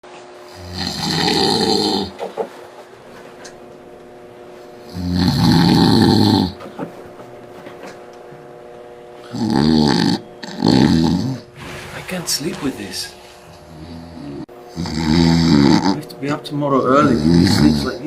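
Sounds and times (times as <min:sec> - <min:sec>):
man snoring loudly: 0:00.5 - 0:02.2, 0:04.8 - 0:06.6, 0:09.2 - 0:11.5, 0:13.7 - 0:16.2, 0:16.9 - 0:18.0.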